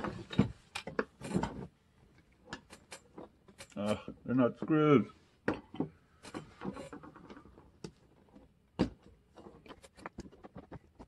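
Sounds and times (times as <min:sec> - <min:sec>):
plastic parts clicking and tapping: 0:00.0 - 0:04.7.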